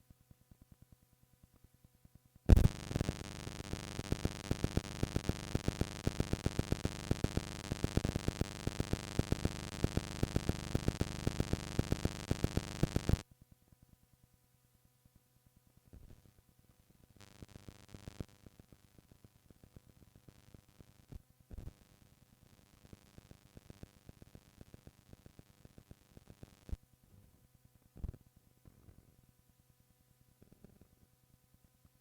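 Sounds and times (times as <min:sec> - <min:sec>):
tape hiss: 0:00.0 - 0:13.3, 0:15.0 - 0:32.0
fast pulsing beat with hum tones: 0:02.5 - 0:13.2.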